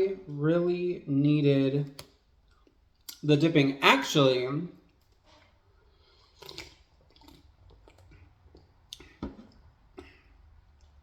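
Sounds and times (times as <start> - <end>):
wet mouth chewing clicks: 6.1 - 9.1.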